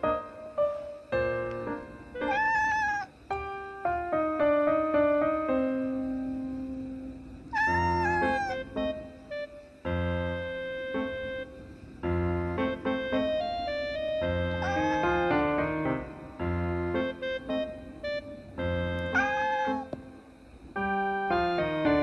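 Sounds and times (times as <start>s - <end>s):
piano music: 0.0s - 22.0s
cat meowing: 2.2s - 3.1s, 7.5s - 8.7s, 14.6s - 15.6s, 19.1s - 19.9s.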